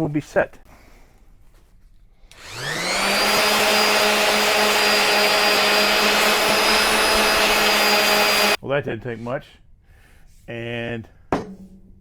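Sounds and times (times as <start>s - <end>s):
electric power sander running: 2.3s - 8.6s.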